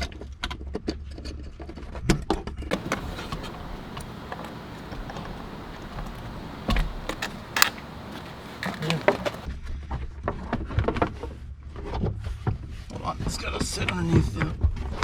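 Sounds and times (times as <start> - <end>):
faint hiss: 2.7 - 9.5
low steady hum: 2.7 - 9.5.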